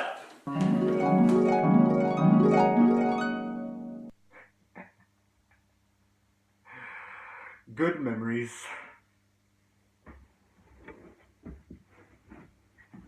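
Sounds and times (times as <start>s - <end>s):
harp-like plucked arpeggios: 0.5s - 4.1s.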